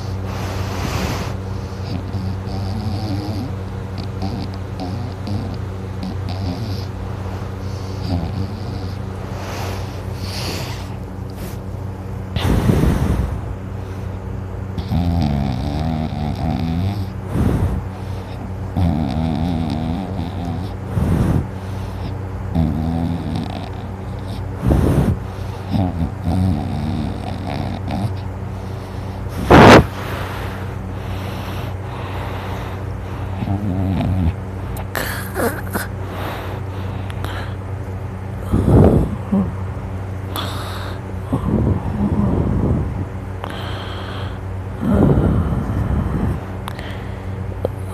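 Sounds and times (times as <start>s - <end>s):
short noisy breath: 0.0s - 2.0s, 9.2s - 14.3s, 28.5s - 33.6s, 43.4s - 47.7s
person snoring: 0.0s - 6.9s, 7.6s - 11.6s, 14.8s - 37.6s, 38.4s - 39.6s, 40.3s - 47.9s
steady low hum: 0.0s - 47.9s
soft vocal sounds: 16.3s - 47.9s.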